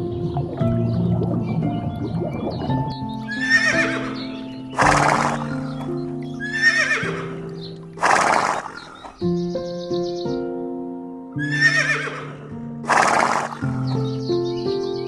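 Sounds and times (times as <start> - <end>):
background music: 0.0 - 15.0
horse whinnying: 3.3 - 5.8, 6.4 - 9.2, 11.4 - 13.8.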